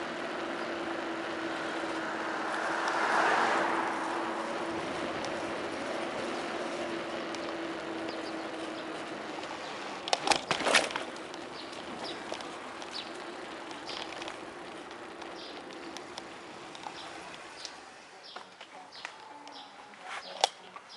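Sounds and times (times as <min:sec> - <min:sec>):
sharp clattering clicks: 0:05.1 - 0:19.6.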